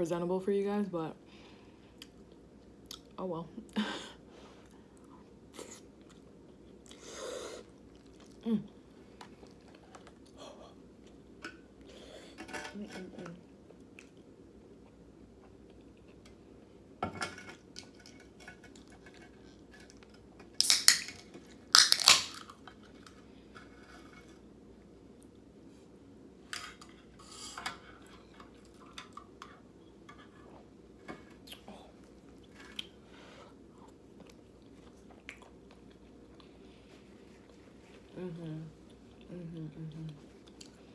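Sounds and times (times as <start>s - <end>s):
chewing: 4.6s - 8.4s, 33.8s - 36.6s.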